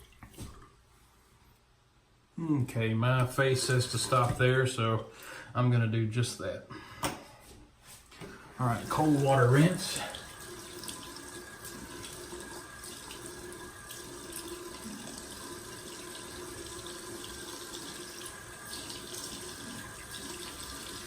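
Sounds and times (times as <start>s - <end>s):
water running from sink tap: 3.5s - 4.4s, 8.6s - 21.0s.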